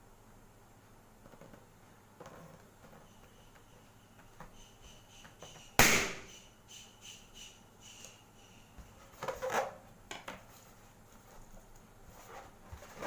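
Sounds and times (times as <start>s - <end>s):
balloon bursting with a pop: 5.8s - 6.3s
rubber squeaks and rustling: 8.8s - 9.8s, 12.1s - 13.0s.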